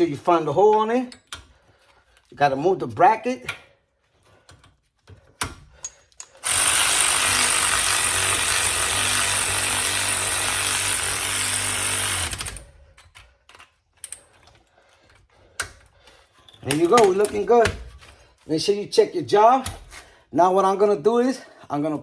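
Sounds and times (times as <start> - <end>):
power tool running: 6.4 - 12.7.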